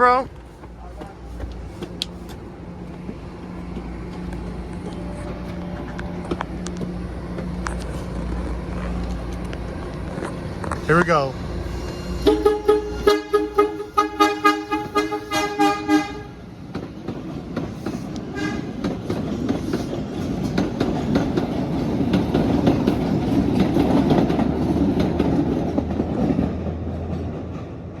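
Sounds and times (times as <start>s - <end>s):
train wheels clicking over rail joints: 0.0s - 15.6s, 16.5s - 28.0s
train horn toots: 11.8s - 16.4s, 18.3s - 18.8s.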